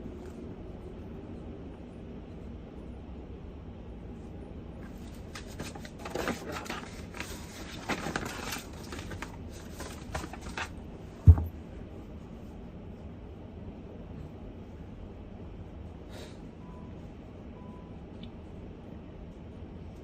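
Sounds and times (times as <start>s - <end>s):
low background noise: 0.0s - 20.0s
objects rustling and scraping: 4.8s - 11.6s
dull thump: 11.2s - 11.6s.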